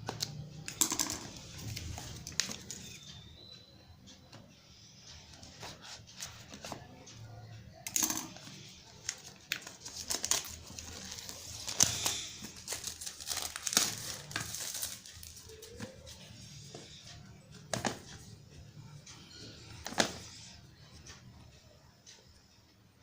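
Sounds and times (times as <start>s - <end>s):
packaging crinkling and tearing: 9.0s - 15.8s.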